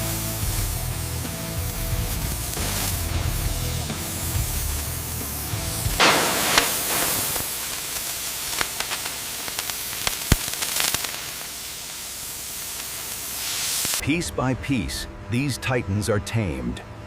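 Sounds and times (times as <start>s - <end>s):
music: 0.0s - 7.4s
plasma cutter hissing and crackling: 0.0s - 14.0s.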